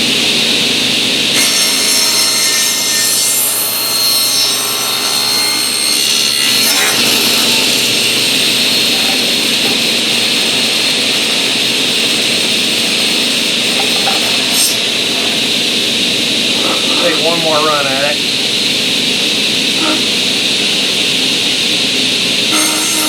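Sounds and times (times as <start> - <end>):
table saw cutting wood: 0.0 - 23.0
table saw blade spinning: 1.7 - 15.5, 22.4 - 23.0.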